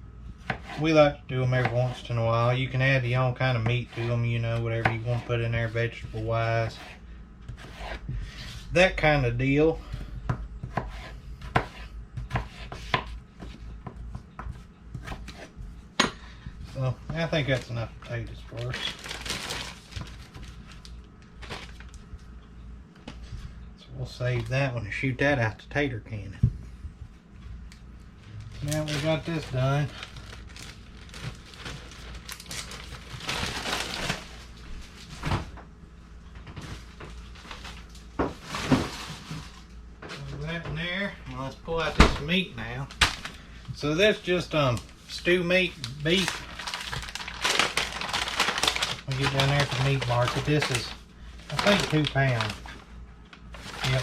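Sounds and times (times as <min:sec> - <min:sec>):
knife chopping on cutting board: 0:00.4 - 0:00.8, 0:10.2 - 0:16.1
kitchen rustling and clattering: 0:28.2 - 0:35.7, 0:36.3 - 0:41.1, 0:46.0 - 0:54.0.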